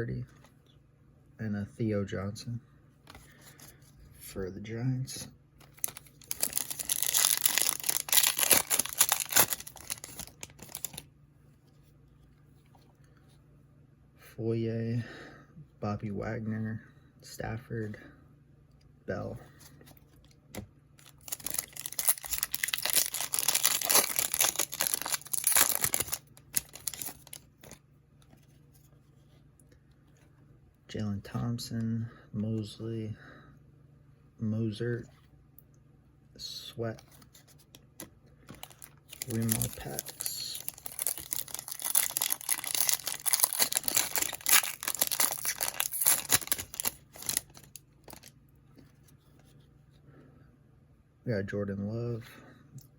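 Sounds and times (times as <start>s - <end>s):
card pack wrapper tearing: 5.6s - 11.0s, 21.0s - 27.8s, 38.5s - 48.3s
wrapper crinkling: 5.6s - 11.0s, 21.0s - 27.8s, 38.5s - 48.3s.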